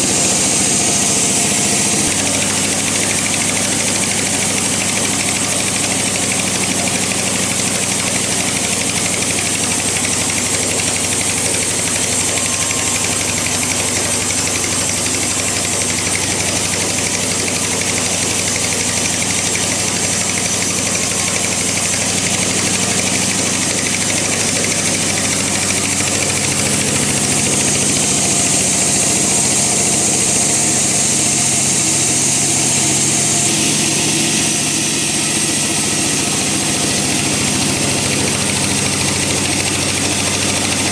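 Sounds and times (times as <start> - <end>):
bandsaw cutting log: 0.0 - 40.9.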